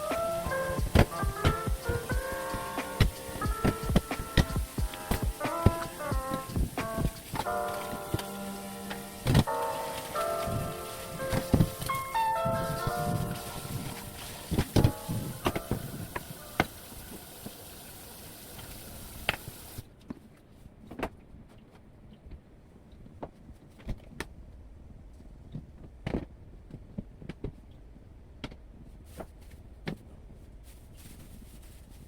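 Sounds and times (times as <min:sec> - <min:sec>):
steady hiss: 0:00.0 - 0:19.9
household items knocking and clicking: 0:00.1 - 0:08.3.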